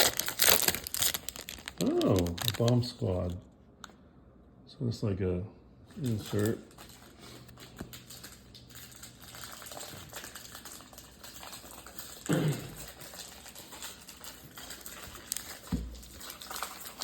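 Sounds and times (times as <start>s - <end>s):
cards clicking and rustling: 0.0s - 3.4s, 6.0s - 17.0s.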